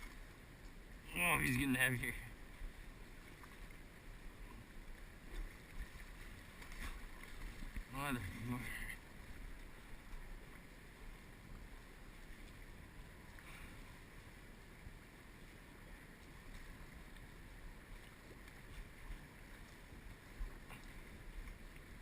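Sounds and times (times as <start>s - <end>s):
faint ticks: 18.0s - 22.0s.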